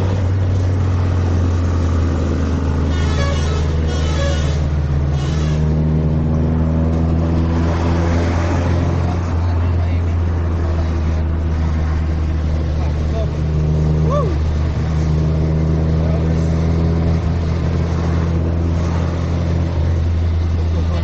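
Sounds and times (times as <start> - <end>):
bus engine idling: 0.0 - 5.7, 19.7 - 21.0.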